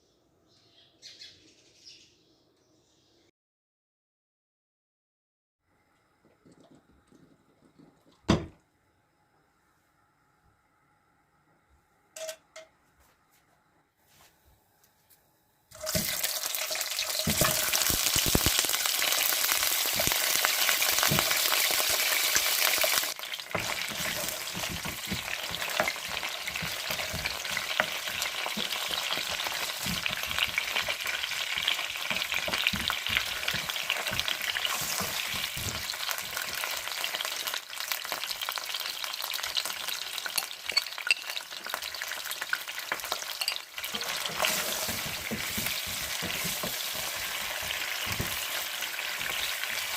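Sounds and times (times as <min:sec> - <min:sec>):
food sizzling in hot oil: 0:15.7 - 0:49.9
spoon scraping a pan: 0:23.5 - 0:31.0, 0:32.1 - 0:36.0, 0:43.3 - 0:49.6.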